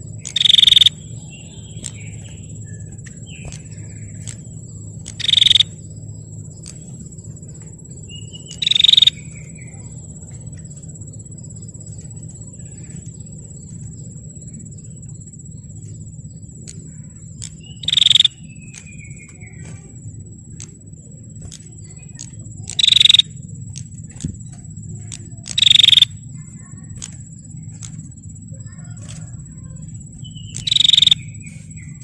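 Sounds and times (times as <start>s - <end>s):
bird rattling calls: 0.0s - 10.8s, 11.8s - 32.0s
high-pitched buzz: 0.0s - 32.0s
low hum: 0.0s - 32.0s.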